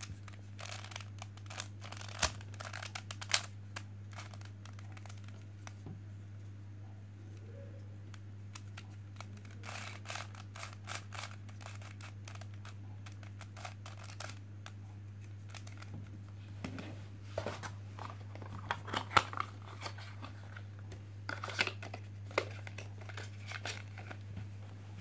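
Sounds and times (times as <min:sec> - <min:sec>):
plastic clicks and rustles: 0:00.0 - 0:05.9, 0:08.1 - 0:16.8
low electrical hum: 0:00.0 - 0:25.0.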